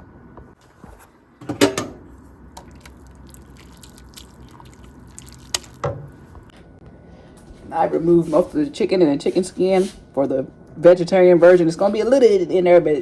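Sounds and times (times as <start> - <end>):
water dripping and trickling: 2.6 - 6.4.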